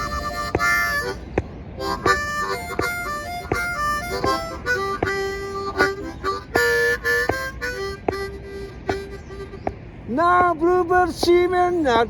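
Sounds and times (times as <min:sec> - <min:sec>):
sharp knocking beat: 0:00.0 - 0:06.6, 0:07.2 - 0:09.8
blues harmonica playing: 0:00.0 - 0:10.8.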